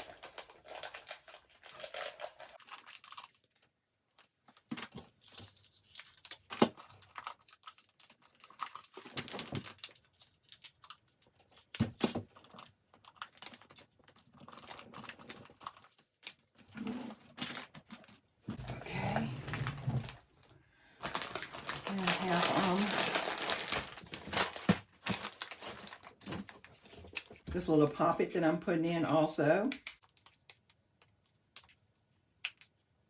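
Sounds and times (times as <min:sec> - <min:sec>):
plastic packaging crinkling: 0:00.0 - 0:11.7, 0:17.2 - 0:20.3, 0:21.0 - 0:27.7.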